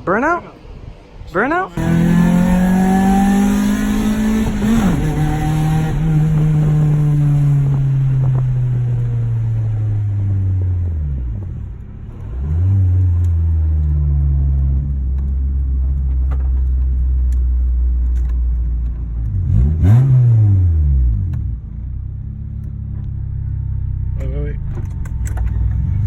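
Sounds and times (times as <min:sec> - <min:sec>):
car engine idling and revving: 0:00.6 - 0:26.0.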